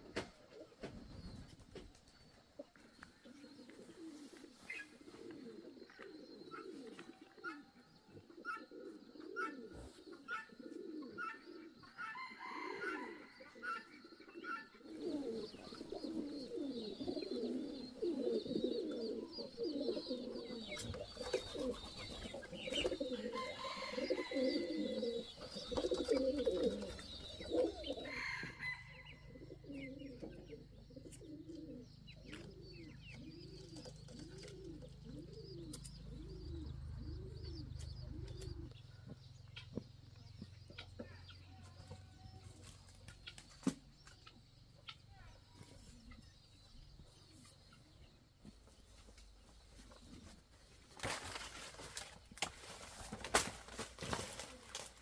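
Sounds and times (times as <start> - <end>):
pigeons cooing: 0.0 - 39.8, 45.7 - 55.0.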